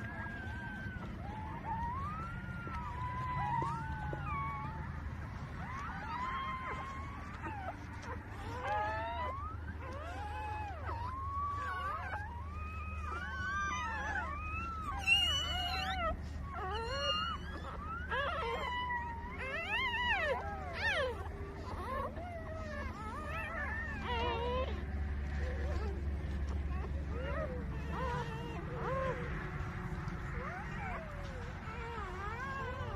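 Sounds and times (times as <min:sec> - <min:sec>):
puppies squealing and whining: 0:00.0 - 0:32.9
steady low hum: 0:00.0 - 0:32.9.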